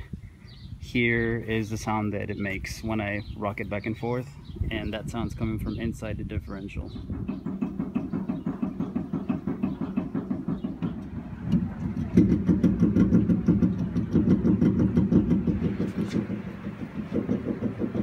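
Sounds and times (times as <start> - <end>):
metallic knocking from truck driveline: 6.9 - 18.0.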